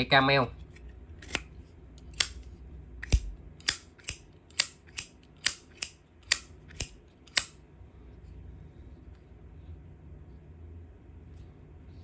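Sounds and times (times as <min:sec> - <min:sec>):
lighter lid snapping open and shut: 0:03.0 - 0:07.6.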